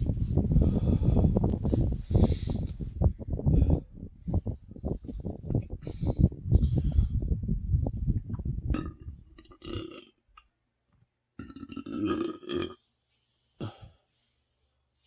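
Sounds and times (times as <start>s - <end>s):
person burping: 8.7s - 10.2s, 11.4s - 12.8s.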